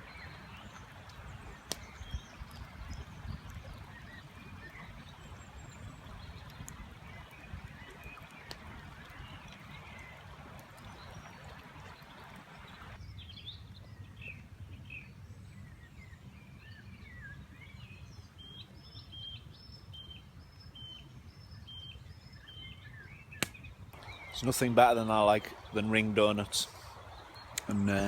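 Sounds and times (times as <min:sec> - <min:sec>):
songbirds singing: 0:00.0 - 0:28.0.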